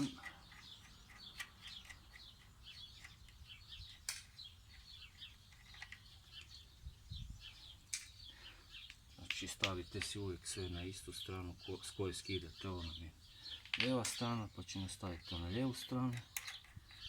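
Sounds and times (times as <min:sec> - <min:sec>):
small birds chirping: 0:00.0 - 0:17.0.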